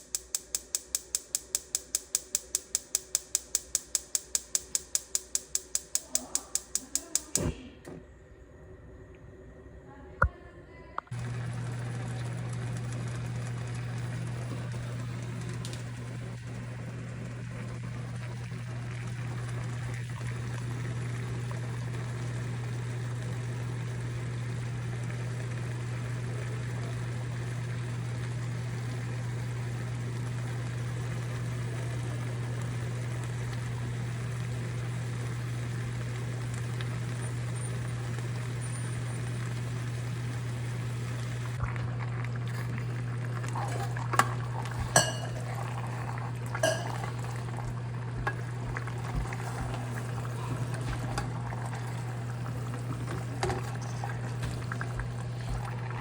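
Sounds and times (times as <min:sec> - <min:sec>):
steady low hum: 0:00.0 - 0:56.0
food bubbling in a pan: 0:11.1 - 0:56.0
utensil clinking against pan: 0:44.9 - 0:45.5.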